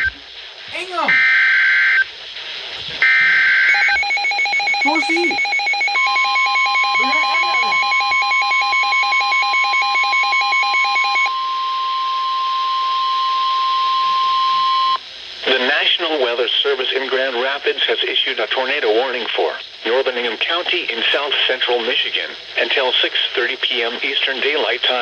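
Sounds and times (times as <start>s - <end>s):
steady warning alarm tone: 3.1s - 11.4s
rapid pulsing alert beep: 3.7s - 8.9s.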